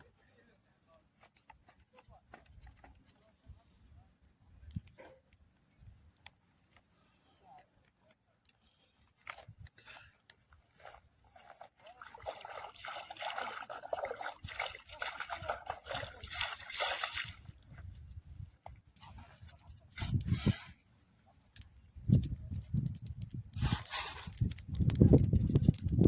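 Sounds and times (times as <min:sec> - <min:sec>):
water trickling and sloshing: 0:10.8 - 0:17.9.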